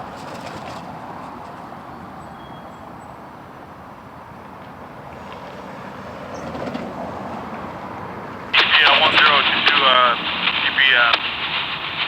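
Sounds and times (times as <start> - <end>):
road traffic hum: 0.0 - 12.0.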